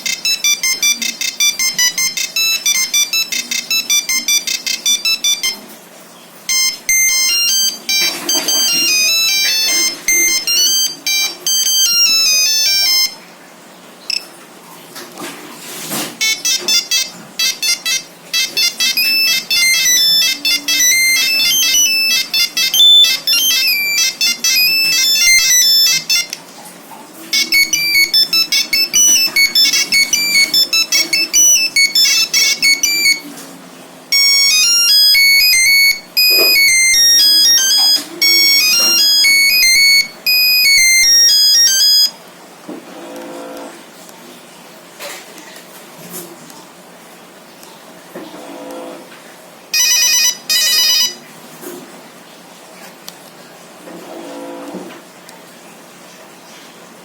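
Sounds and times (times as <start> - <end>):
monophonic phone ringtones: 0.0 - 5.7, 6.5 - 13.2, 16.2 - 26.4, 27.3 - 33.4, 34.1 - 42.2, 49.7 - 51.2.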